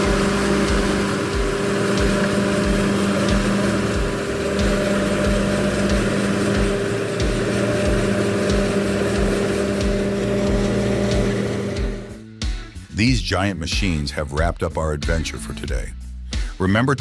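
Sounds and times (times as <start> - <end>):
machine humming: 0.0 - 12.2.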